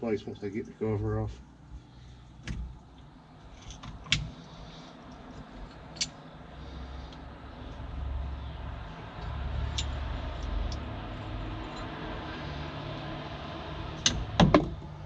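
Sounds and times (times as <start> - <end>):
steady low hum: 0.0 - 15.0
small metal parts clicking: 5.1 - 6.2, 9.2 - 12.0.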